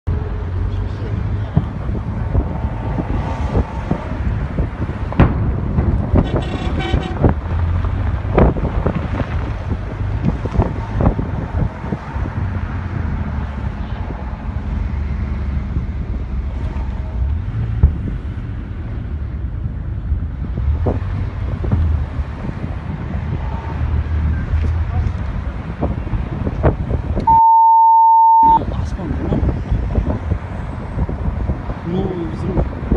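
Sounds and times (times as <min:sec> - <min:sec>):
low rumble: 0:00.1 - 0:10.4
wind on microphone: 0:00.1 - 0:27.4, 0:28.5 - 0:32.9
vehicle horn: 0:06.2 - 0:07.3.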